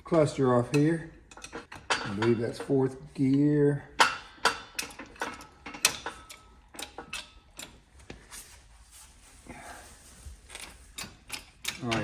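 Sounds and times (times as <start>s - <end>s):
metallic clicks of steel parts: 0.1s - 8.0s, 10.4s - 12.0s.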